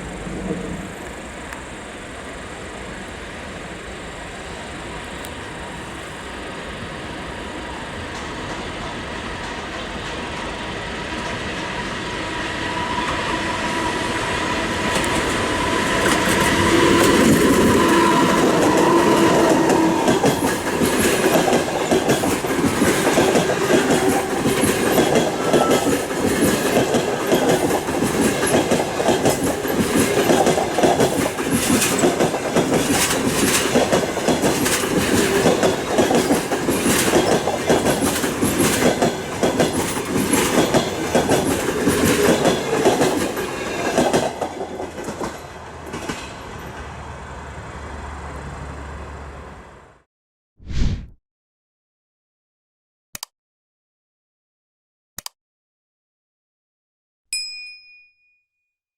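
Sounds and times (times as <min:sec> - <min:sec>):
train wheels clattering: 0:14.8 - 0:46.4.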